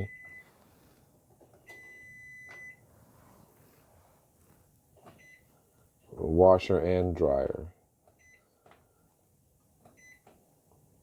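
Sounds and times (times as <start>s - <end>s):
washer control panel beeps: 0.0s - 0.5s, 1.6s - 2.8s, 5.1s - 5.5s, 8.2s - 8.4s, 9.9s - 10.3s.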